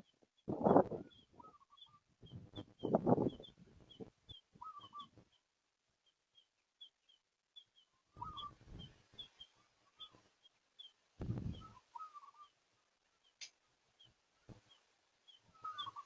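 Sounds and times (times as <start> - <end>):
louder lower bird calls: 0.0 - 5.4, 7.6 - 12.6, 14.0 - 16.0
short high bird chirps: 8.2 - 8.9, 15.6 - 16.0.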